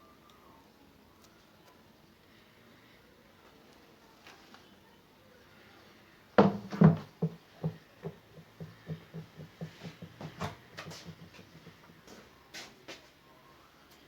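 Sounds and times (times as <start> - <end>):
hollow knocks: 6.4 - 12.0.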